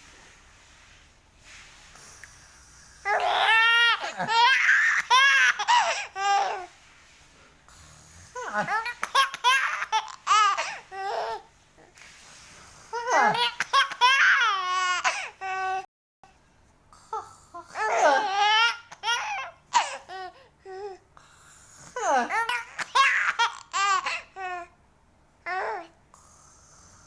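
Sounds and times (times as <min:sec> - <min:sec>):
baby babbling: 0:03.1 - 0:06.7, 0:17.6 - 0:21.0
baby laughing: 0:03.1 - 0:06.7, 0:08.4 - 0:11.4, 0:13.0 - 0:15.8, 0:17.8 - 0:20.3, 0:22.4 - 0:24.6.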